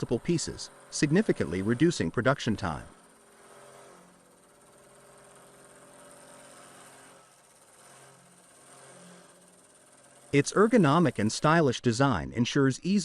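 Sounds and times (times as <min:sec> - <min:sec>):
faint machine hum: 0:00.0 - 0:13.0.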